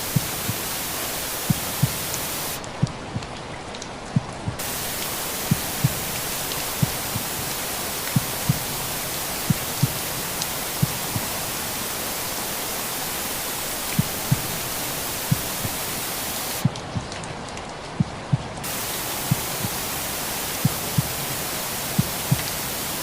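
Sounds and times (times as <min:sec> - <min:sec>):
slow heartbeat thumps: 0:00.0 - 0:00.7, 0:01.4 - 0:03.4, 0:04.1 - 0:11.4, 0:13.9 - 0:15.9, 0:16.6 - 0:17.2, 0:18.0 - 0:19.8, 0:22.0 - 0:22.5
white noise hiss: 0:00.0 - 0:03.1, 0:04.6 - 0:16.9, 0:18.6 - 0:23.0.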